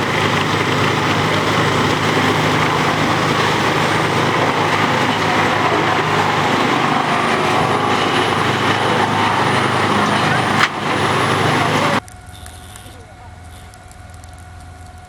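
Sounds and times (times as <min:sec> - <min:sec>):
wood chipper running: 0:00.0 - 0:12.0.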